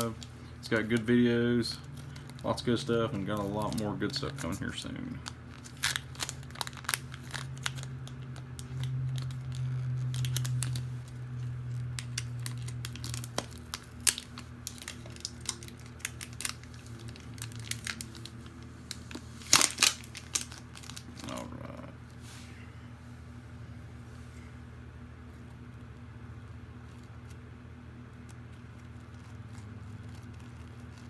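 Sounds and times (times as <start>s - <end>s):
packaging crinkling and tearing: 0.0s - 21.8s, 28.6s - 31.0s
steady low hum: 0.0s - 31.0s.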